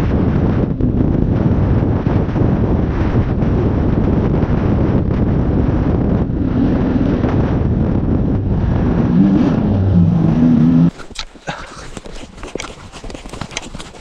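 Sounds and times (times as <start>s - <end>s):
wind rumble on microphone: 0.0s - 14.0s.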